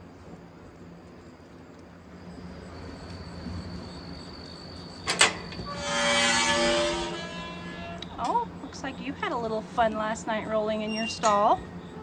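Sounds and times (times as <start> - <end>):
sliding door squealing: 2.6 - 8.6, 10.7 - 11.7.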